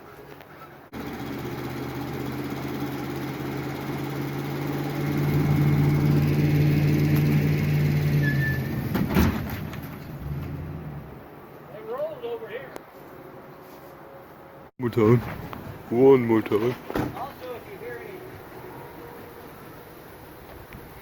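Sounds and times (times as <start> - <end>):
engine humming: 0.9 - 11.5.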